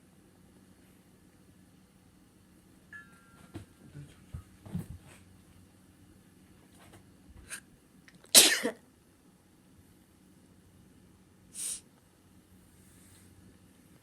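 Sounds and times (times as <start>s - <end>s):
person sneezing: 8.3s - 8.8s.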